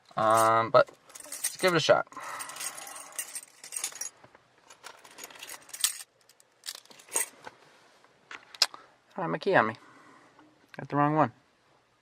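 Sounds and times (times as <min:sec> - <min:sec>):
keys jangling: 0:01.1 - 0:04.1, 0:04.7 - 0:07.3.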